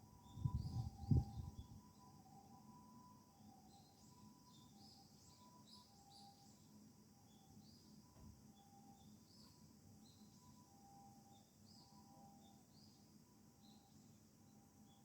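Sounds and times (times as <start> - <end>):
distant two-tone ambulance siren: 0.0 - 6.3.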